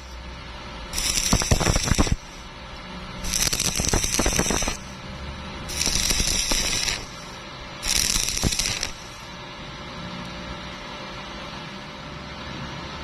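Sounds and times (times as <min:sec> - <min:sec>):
welding arc crackling: 0:00.0 - 0:09.4.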